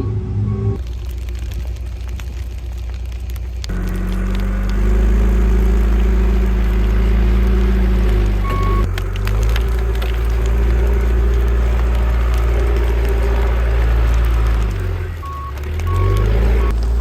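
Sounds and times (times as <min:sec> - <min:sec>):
short beep: 0:00.0 - 0:00.8, 0:08.5 - 0:08.8
vehicle engine rumbling: 0:00.0 - 0:17.0
light crackling: 0:00.8 - 0:17.0.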